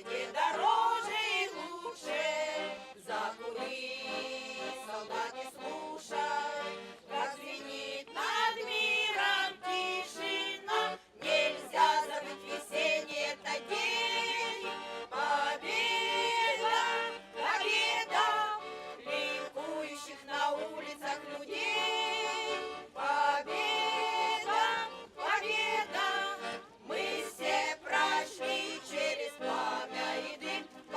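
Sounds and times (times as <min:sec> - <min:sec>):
group of voices singing: 0:00.0 - 0:30.9
instrumental accompaniment: 0:08.5 - 0:30.9.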